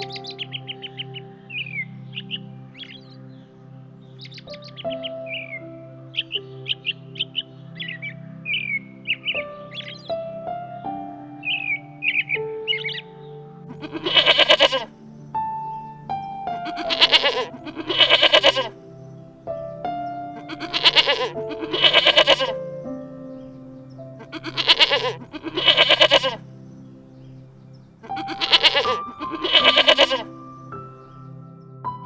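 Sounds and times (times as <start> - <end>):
background music with held notes: 0.0 - 32.0
wavering bleating cries: 13.7 - 14.9, 16.6 - 18.8, 20.4 - 22.7, 24.2 - 26.5, 28.0 - 30.5.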